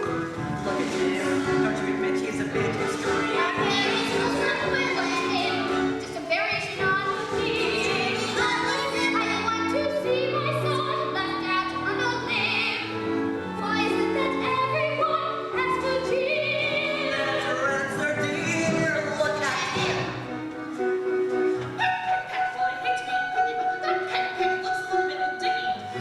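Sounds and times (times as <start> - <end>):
person singing with vibrato: 0.0 - 20.0, 21.8 - 26.0
instrumental accompaniment: 0.0 - 26.0.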